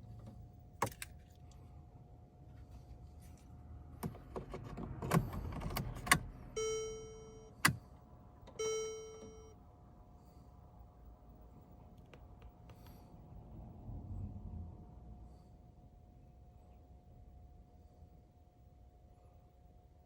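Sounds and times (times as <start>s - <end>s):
faint steady hum: 5.1s - 20.0s
electronic warning chimes: 8.6s - 9.5s.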